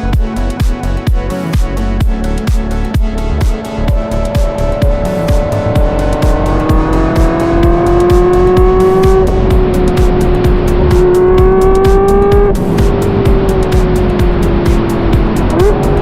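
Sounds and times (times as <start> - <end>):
background music with steady beat: 0.0 - 16.0
car engine accelerating: 2.3 - 16.0.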